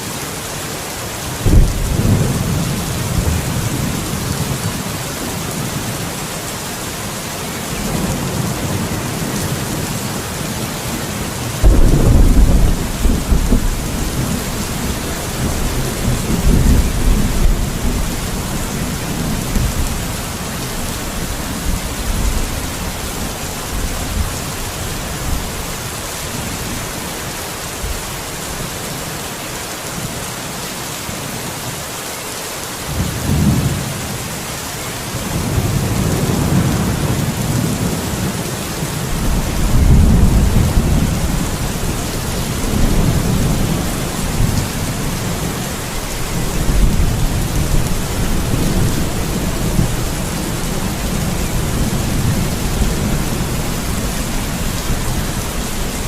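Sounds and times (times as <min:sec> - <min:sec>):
steady rain: 0:00.0 - 0:56.0
thunder rumbling: 0:01.4 - 0:06.0, 0:10.9 - 0:25.6, 0:35.3 - 0:38.4, 0:39.0 - 0:56.0.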